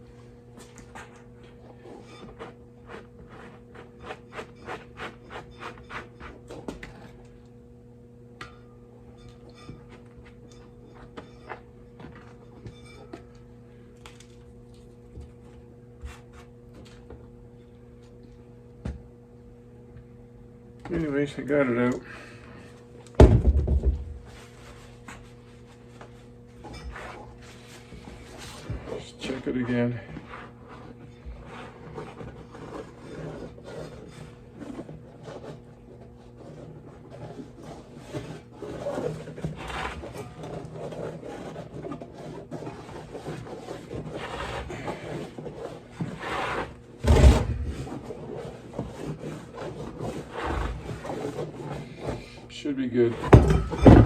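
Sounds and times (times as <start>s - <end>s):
low electrical hum: 0.0s - 54.0s
hand scraping inside a tire: 26.8s - 52.4s.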